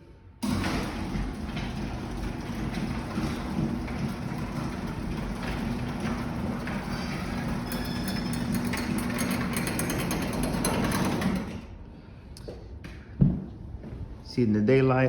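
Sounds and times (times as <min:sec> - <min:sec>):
garage door opener motor hum: 0:00.3 - 0:11.9
mechanical rattle of door drive: 0:00.4 - 0:11.7.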